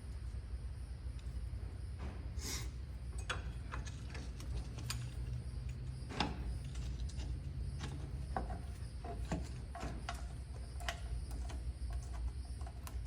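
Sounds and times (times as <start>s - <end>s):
steady low hum: 0.0s - 13.0s
tools and metal parts clicking: 3.2s - 13.0s.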